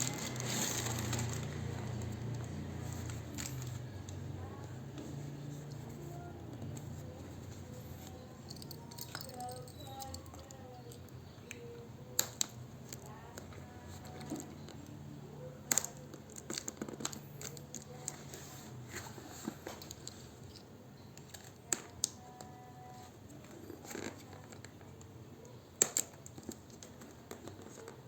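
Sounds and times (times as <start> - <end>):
packaging crinkling: 0.0 - 3.8.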